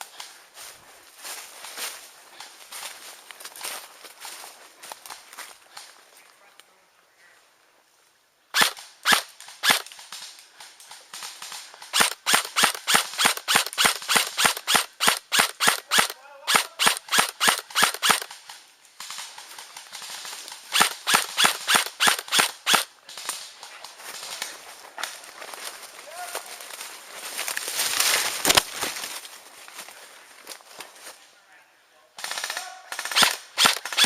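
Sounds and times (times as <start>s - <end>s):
airsoft gun shots: 8.6s - 9.9s, 11.9s - 18.3s, 20.7s - 22.9s, 32.2s - 34.0s.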